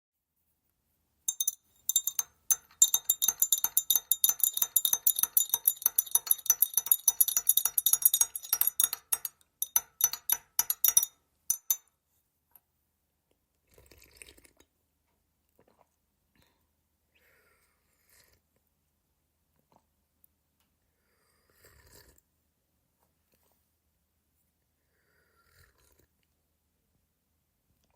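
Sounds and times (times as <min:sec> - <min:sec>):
teaspoon clinking in cup: 0:01.3 - 0:11.8.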